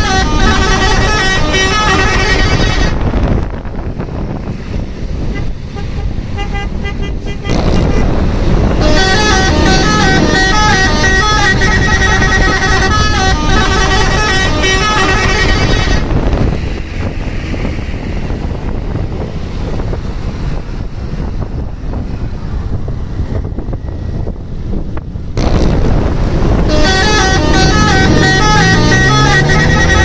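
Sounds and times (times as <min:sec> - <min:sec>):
bus multi-tone horn melody: 0:00.0 - 0:03.2, 0:05.2 - 0:16.3, 0:26.5 - 0:30.0
traffic noise: 0:00.0 - 0:30.0.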